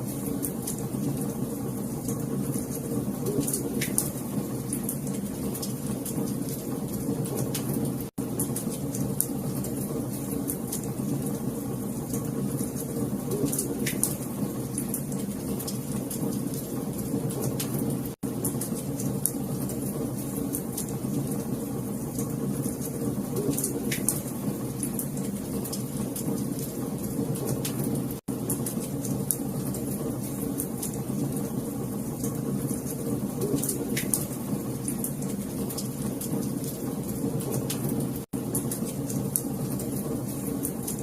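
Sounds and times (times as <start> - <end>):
wood fire crackling: 0.0 - 41.0
fire pops and snaps: 2.0 - 9.8, 12.1 - 16.6, 22.1 - 26.8, 32.2 - 41.0.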